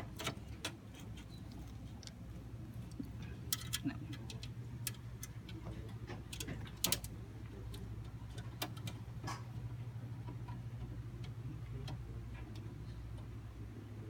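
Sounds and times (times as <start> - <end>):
steady low hum: 0.0 - 14.0
computer parts clicking: 2.8 - 9.5.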